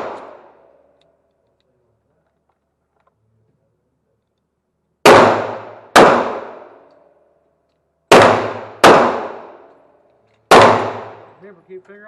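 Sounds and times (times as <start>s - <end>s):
gunshots with echoing tail: 0.0s - 0.7s, 5.0s - 6.9s, 8.1s - 9.7s, 10.5s - 11.4s.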